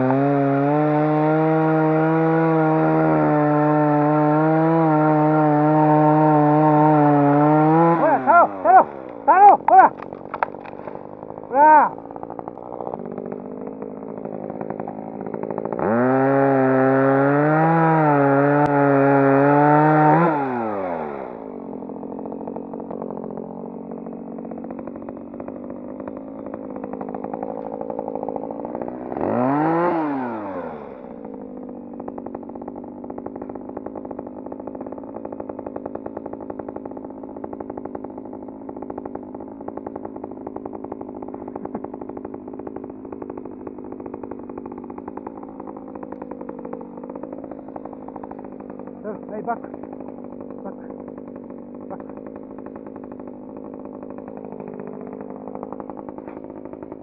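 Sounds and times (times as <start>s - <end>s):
electric chainsaw running: 0.0s - 57.0s
steady engine hum: 0.2s - 57.0s.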